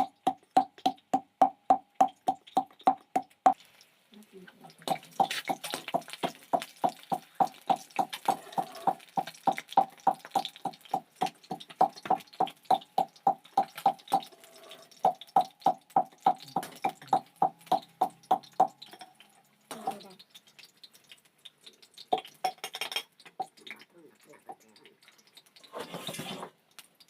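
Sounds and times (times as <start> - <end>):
rapid knocking during food preparation: 0.0 - 3.6, 4.7 - 14.3, 15.0 - 18.9.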